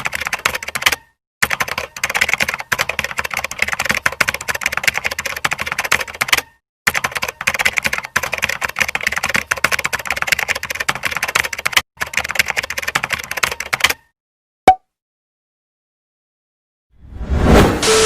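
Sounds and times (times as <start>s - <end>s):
keyboard typing: 0.0s - 14.1s.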